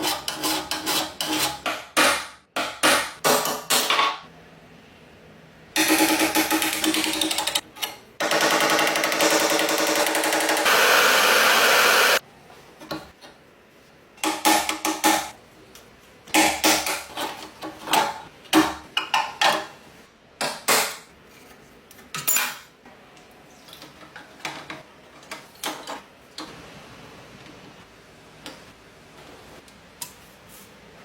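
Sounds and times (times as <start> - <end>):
loud steady machine noise: 8.2 - 12.2.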